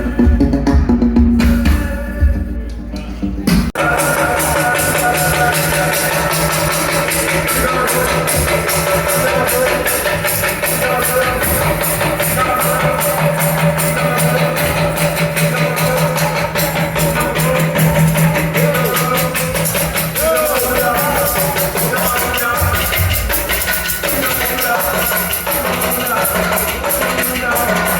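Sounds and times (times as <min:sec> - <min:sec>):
fast dense percussion: 0:03.5 - 0:27.9
held bass note: 0:22.1 - 0:24.5.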